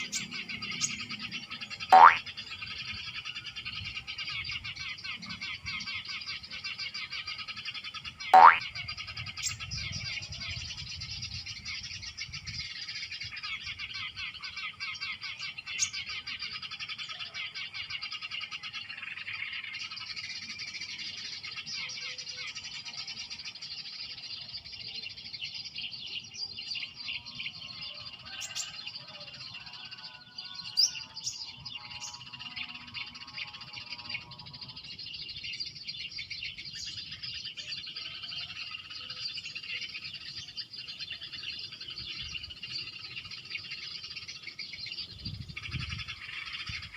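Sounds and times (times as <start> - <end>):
tuneful bird call: 0.0 - 11.8
sparrows chirping through speaker: 0.0 - 46.9.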